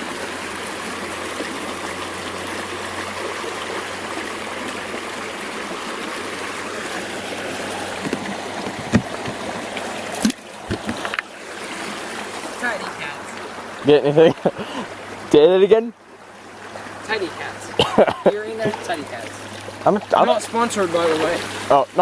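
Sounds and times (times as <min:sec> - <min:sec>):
creek water running over stones: 0:00.0 - 0:22.0
sharp knocks: 0:08.0 - 0:09.4.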